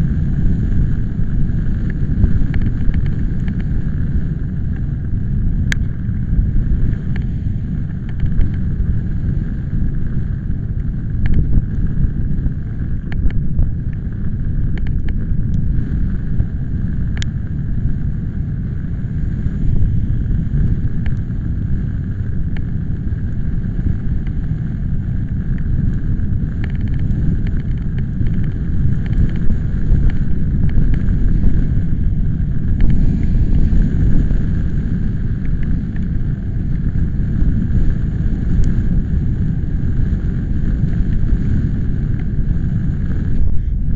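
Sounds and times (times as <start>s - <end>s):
wind buffeting microphone: 0.0s - 43.9s
sharp ticks: 1.6s - 3.8s, 7.9s - 8.6s, 10.8s - 11.8s, 14.7s - 15.6s, 17.1s - 17.4s, 21.0s - 21.3s, 25.2s - 31.8s, 32.7s - 34.3s.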